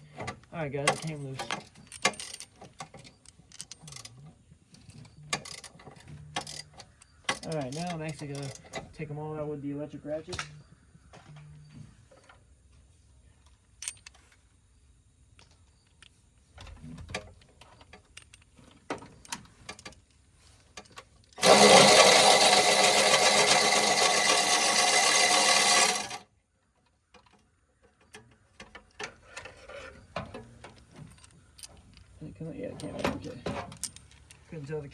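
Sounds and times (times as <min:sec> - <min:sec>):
tools clicking and knocking: 0:00.1 - 0:09.0, 0:13.8 - 0:14.4, 0:17.1 - 0:26.2, 0:26.8 - 0:32.2, 0:32.8 - 0:34.4
electric ratchet running: 0:21.4 - 0:26.2.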